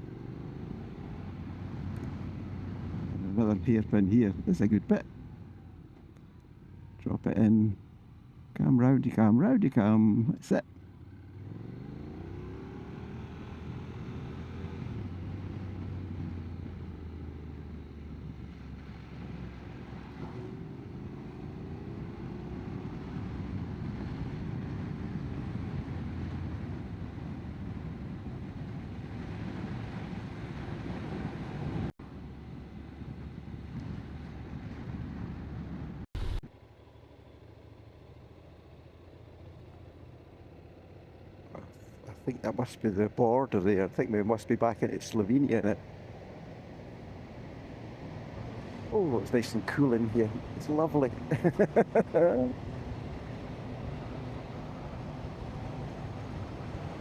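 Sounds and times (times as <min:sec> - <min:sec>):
wind and road noise: 0:00.0 - 0:57.0
wind rumble: 0:25.9 - 0:36.4
motorcycle engine pulling away: 0:36.2 - 0:36.4.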